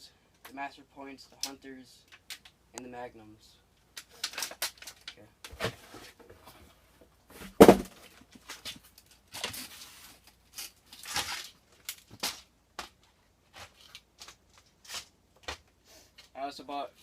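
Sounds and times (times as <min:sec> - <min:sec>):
loud thump: 0:07.6 - 0:07.9.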